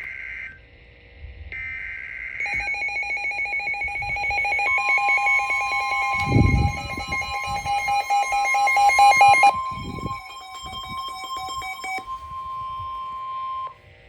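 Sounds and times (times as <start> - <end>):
digital header data burst: 2.4 - 13.2
rapidly pulsing lower tone: 2.4 - 13.2
warbling high alert tone: 2.4 - 13.4.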